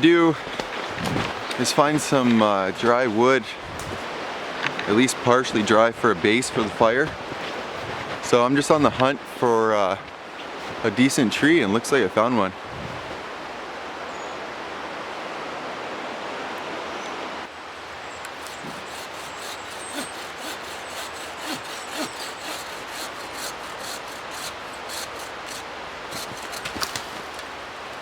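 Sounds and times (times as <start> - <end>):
dry wood cracking and snapping: 18.3 - 27.5.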